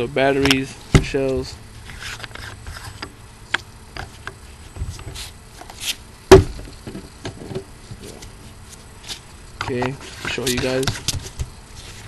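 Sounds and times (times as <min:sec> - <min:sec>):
loud sharp knock: 0:06.3 - 0:06.6.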